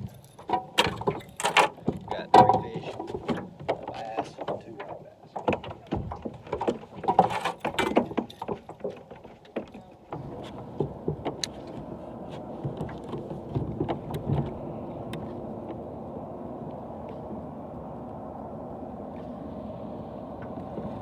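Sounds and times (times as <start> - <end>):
gear knocking and clattering: 0.0 - 11.8
small boat motor humming: 0.0 - 21.0.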